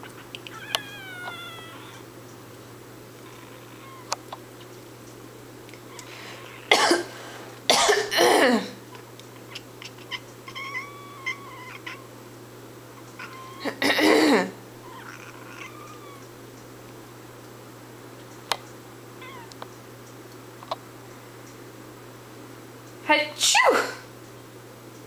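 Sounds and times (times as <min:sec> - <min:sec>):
cat meowing: 0:00.0 - 0:02.1, 0:03.2 - 0:04.2, 0:05.9 - 0:06.7, 0:09.5 - 0:12.1, 0:13.2 - 0:13.8, 0:14.8 - 0:16.3, 0:19.2 - 0:19.6
person coughing: 0:06.7 - 0:08.8, 0:13.7 - 0:14.6.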